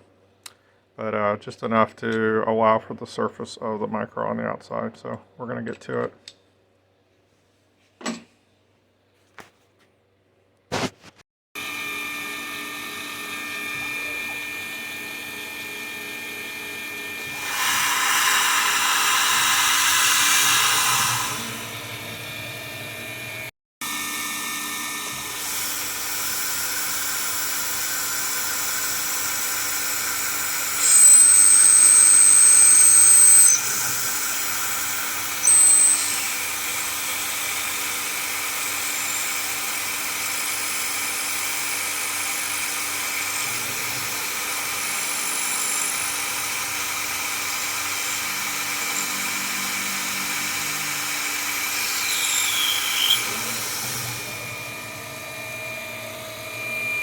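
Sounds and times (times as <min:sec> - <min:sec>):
milling machine spindle running: 0:11.6 - 0:57.0
drill bit squealing: 0:17.2 - 0:22.2, 0:25.7 - 0:53.8.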